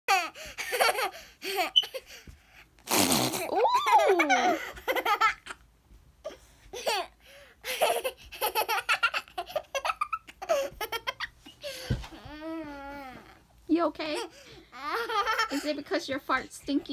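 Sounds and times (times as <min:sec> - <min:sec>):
fart noise: 0:02.8 - 0:03.6
child giggling: 0:03.5 - 0:05.6, 0:06.8 - 0:11.4, 0:14.7 - 0:15.8.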